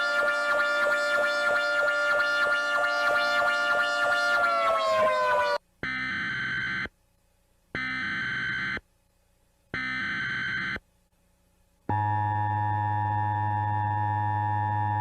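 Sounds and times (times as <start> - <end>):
digital data tone bursts: 0.0 - 5.2
steady alert tone: 0.0 - 5.6.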